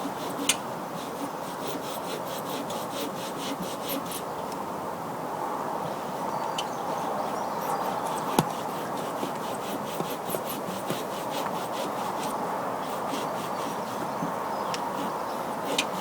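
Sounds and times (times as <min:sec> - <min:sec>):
hacksaw rasping through cork: 0:08.1 - 0:14.2, 0:14.8 - 0:16.0.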